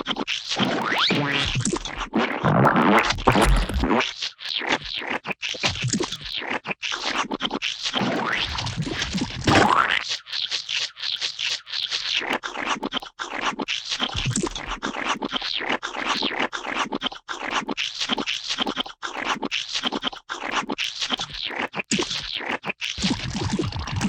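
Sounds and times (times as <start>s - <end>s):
gooey wet splats: 1.3s - 4.0s.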